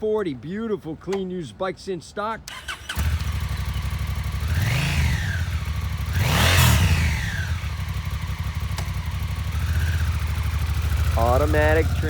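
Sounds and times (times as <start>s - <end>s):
motorcycle engine idling and revving: 2.5s - 12.0s.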